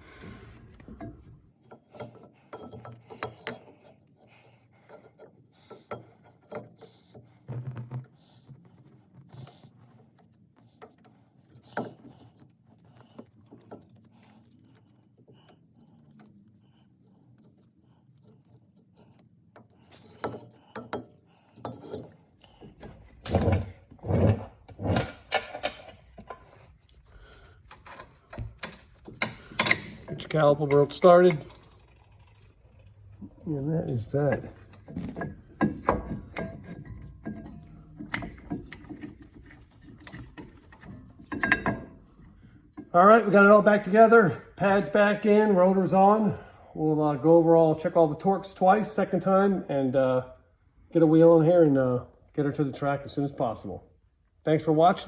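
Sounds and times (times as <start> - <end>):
metal tools clicking and clinking: 19.9 - 26.7, 27.5 - 32.1, 33.9 - 42.9.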